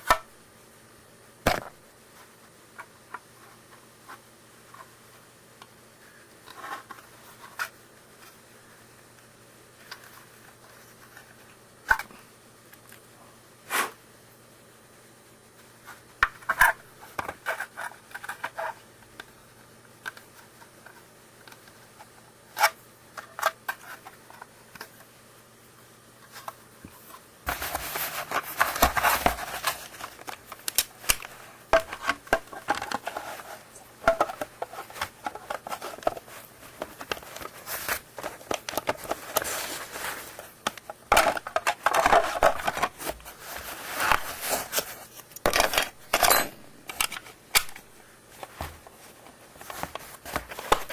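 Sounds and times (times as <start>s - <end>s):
rustling and scraping: 6.4s - 8.8s, 26.2s - 50.9s
plastic parts clicking: 45.4s - 47.8s.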